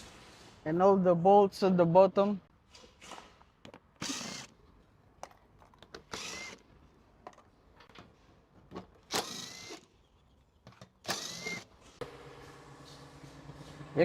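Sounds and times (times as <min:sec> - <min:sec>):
cordless power driver whirring: 0:04.0 - 0:04.5, 0:06.1 - 0:06.6, 0:11.1 - 0:12.2.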